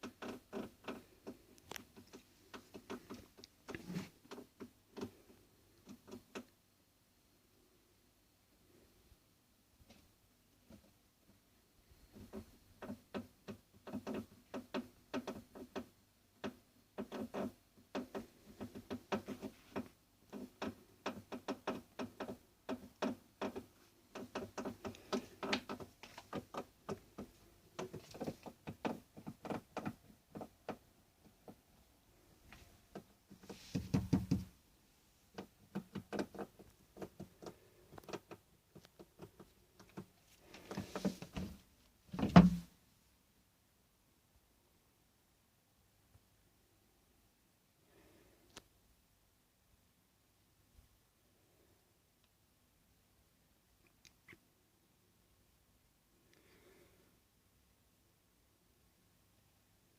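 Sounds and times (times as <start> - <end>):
quick irregular clicks and knocks: 0.0 - 6.6, 12.0 - 34.6, 35.3 - 42.7.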